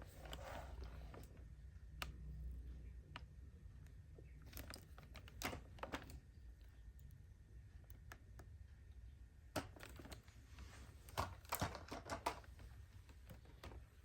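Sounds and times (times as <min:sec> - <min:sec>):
light clicks and taps: 0:00.2 - 0:07.2.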